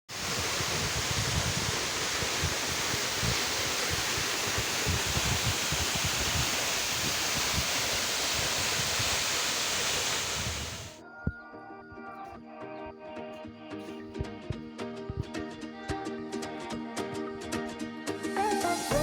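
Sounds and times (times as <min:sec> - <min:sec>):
waterfall rushing: 0:00.1 - 0:11.0, 0:18.2 - 0:19.0.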